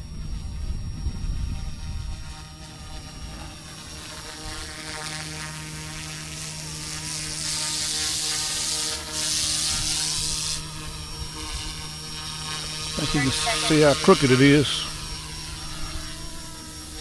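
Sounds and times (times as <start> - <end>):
rc helicopter motor and rotor hum: 0.0 - 17.0
high blade hiss: 6.4 - 10.8, 13.0 - 17.0.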